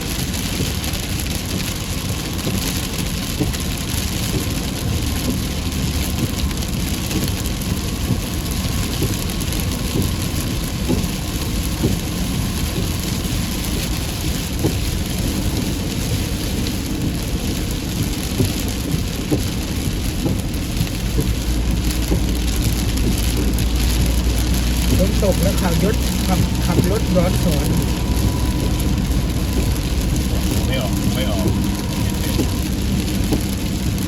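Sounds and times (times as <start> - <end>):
heavy rain falling: 0.0 - 34.0
low rumble: 0.0 - 34.0
drops ticking sharply: 21.1 - 34.0.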